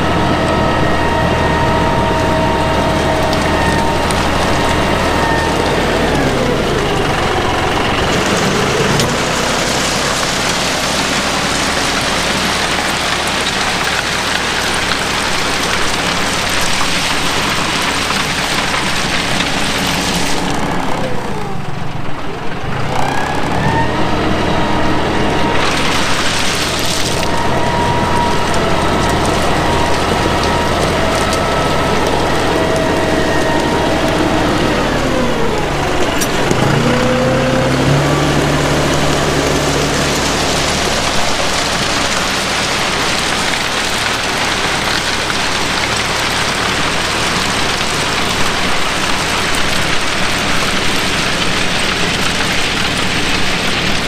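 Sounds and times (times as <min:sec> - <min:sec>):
tractor engine under load: 0:00.0 - 0:54.0
scraper rushing over gravel: 0:08.0 - 0:20.6, 0:25.4 - 0:35.6.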